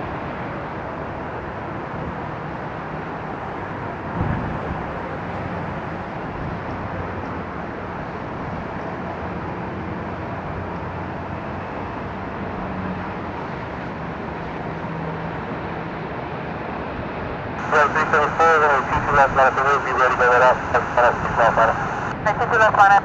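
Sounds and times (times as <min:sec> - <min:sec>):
strong wind: 0:04.0 - 0:05.2
faint low hum: 0:17.6 - 0:23.0
heavy rain: 0:17.6 - 0:23.0.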